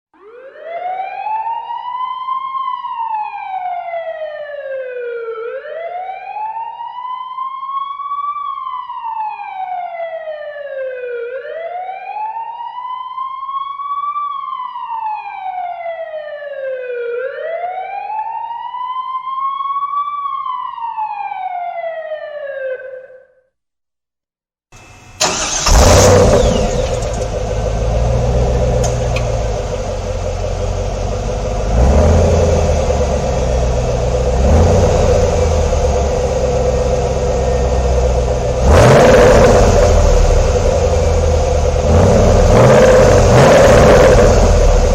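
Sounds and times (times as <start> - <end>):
car starting on weak battery: 24.8 - 44.9
electronic siren wailing: 24.8 - 44.9.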